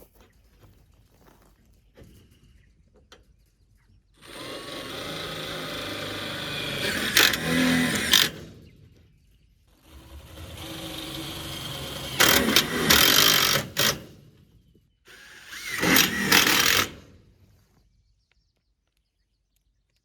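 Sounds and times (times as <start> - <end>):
handheld power tool running: 4.2 - 8.7, 9.8 - 14.2, 15.1 - 17.2.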